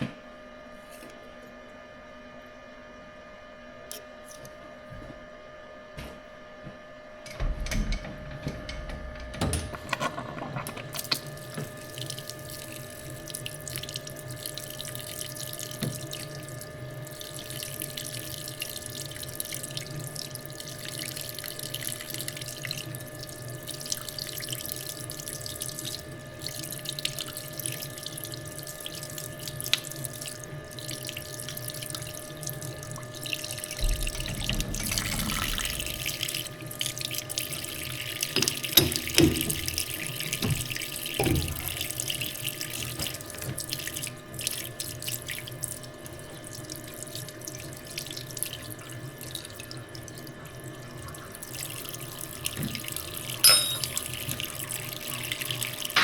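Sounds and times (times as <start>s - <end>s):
coolant splashing: 29.1s - 50.3s.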